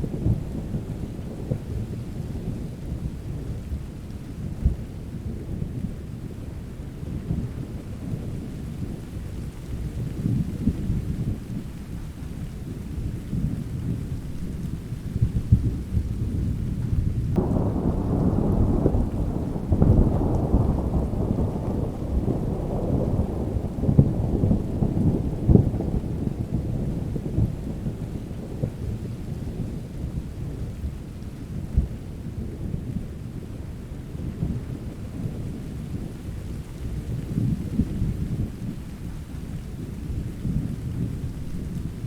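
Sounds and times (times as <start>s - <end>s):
steady rain: 0.0s - 42.0s
rumbling thunder: 12.9s - 42.0s.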